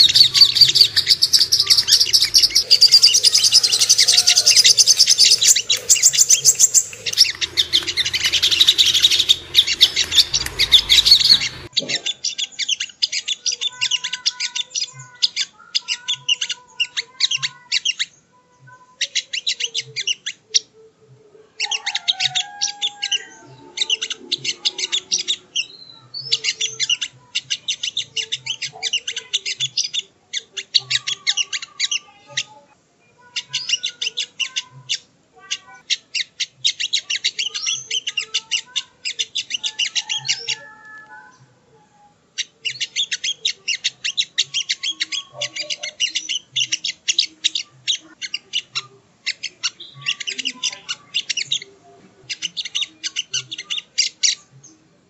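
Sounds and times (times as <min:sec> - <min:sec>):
bird chattering: 0:00.0 - 0:18.1, 0:21.6 - 0:32.6, 0:42.4 - 0:54.5.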